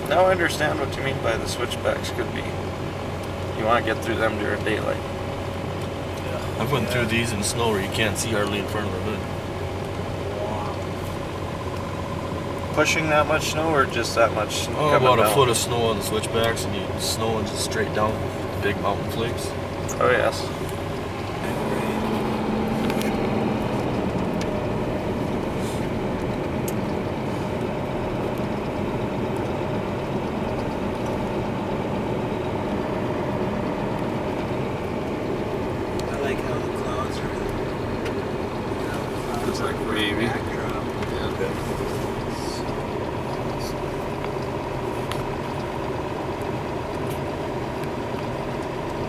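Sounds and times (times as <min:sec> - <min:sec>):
faint steady whine: 0:00.0 - 0:49.0
low hum: 0:00.0 - 0:49.0
truck engine drone and road noise: 0:00.0 - 0:49.0
light ticks: 0:22.8 - 0:24.6, 0:25.3 - 0:31.4, 0:35.9 - 0:36.4.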